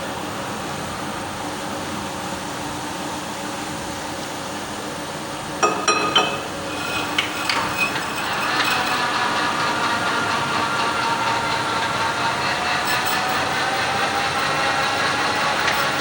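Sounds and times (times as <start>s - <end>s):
metallic ringing: 5.6s - 9.2s
lathe humming: 5.6s - 16.0s.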